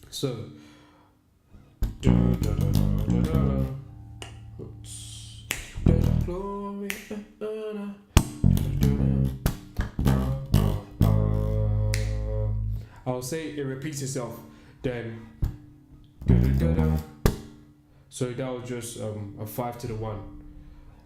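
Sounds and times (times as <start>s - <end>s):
bass guitar low notes: 1.8s - 6.7s, 8.2s - 13.0s, 15.4s - 17.5s.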